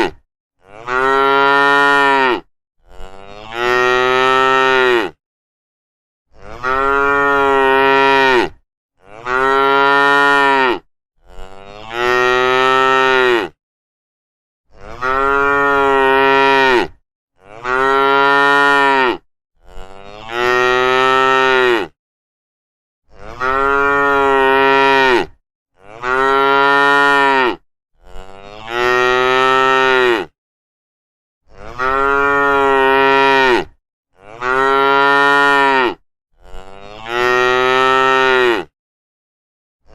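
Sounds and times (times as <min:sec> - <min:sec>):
cow mooing: 0:00.0 - 0:05.2, 0:06.3 - 0:13.6, 0:14.8 - 0:22.0, 0:23.1 - 0:30.4, 0:31.5 - 0:38.7.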